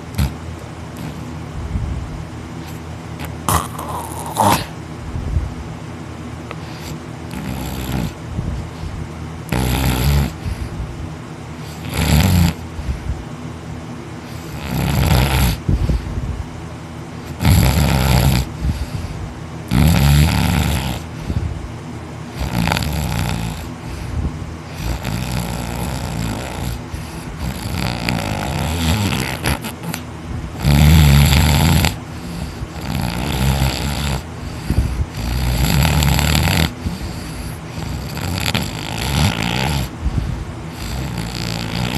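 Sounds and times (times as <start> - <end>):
man snoring heavily: 0.0 - 0.4, 1.0 - 1.3, 2.6 - 4.8, 6.6 - 8.2, 9.5 - 10.8, 11.6 - 13.1, 14.2 - 16.1, 17.2 - 21.5, 22.3 - 41.9.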